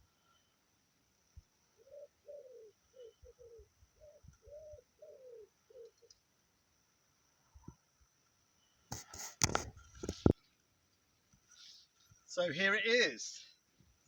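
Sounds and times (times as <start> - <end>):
pigeon cooing: 1.8 - 6.2.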